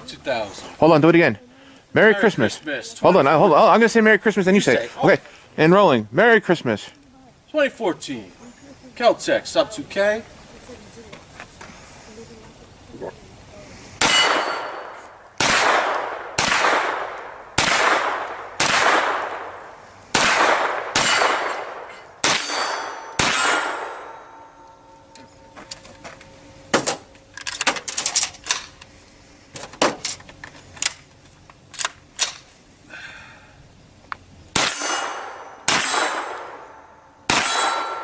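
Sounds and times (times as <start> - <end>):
carbine gunshots: 14.0 - 24.6, 34.5 - 38.0.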